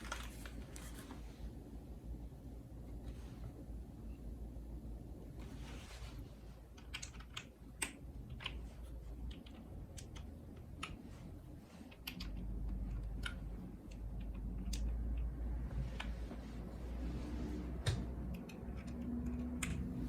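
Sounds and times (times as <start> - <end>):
mechanical keyboard typing: 6.7 - 11.0, 11.9 - 16.1, 18.0 - 20.0.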